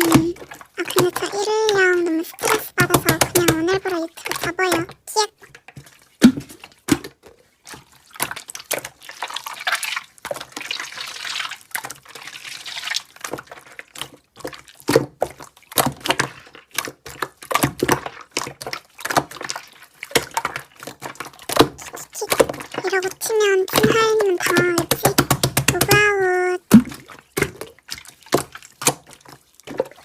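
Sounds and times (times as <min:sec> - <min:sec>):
slime squelching: 0:00.0 - 0:05.3, 0:18.0 - 0:30.0.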